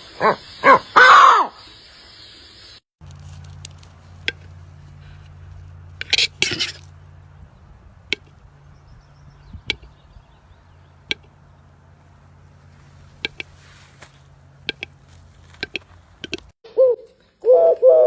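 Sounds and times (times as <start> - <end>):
steady low hum: 3.0 - 16.6
sharp clicks: 9.6 - 10.0, 11.0 - 11.4, 13.2 - 13.5, 14.6 - 16.5.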